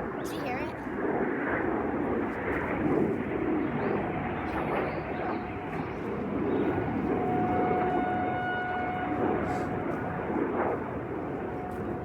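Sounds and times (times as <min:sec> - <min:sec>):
airplane flying over: 0:00.0 - 0:12.0
distant warning sirens wailing: 0:03.1 - 0:12.0.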